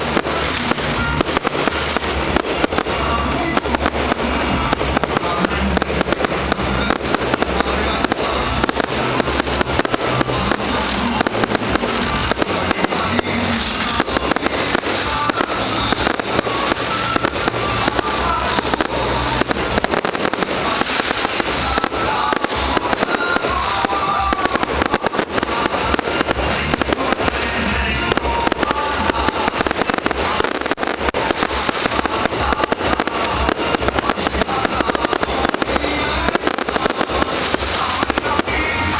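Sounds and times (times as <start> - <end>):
fireworks bangs and crackling: 0.0 - 38.9
music playing: 0.0 - 38.9.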